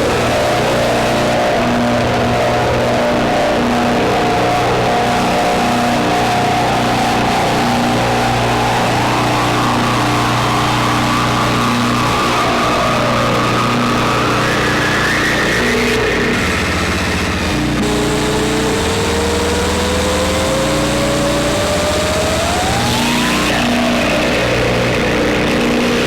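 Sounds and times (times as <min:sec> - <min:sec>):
gritty synthesizer drone: 0:00.0 - 0:26.0
sliding pitched tones: 0:14.9 - 0:24.6
low hum: 0:16.2 - 0:23.7
pulsing low note: 0:16.6 - 0:23.5.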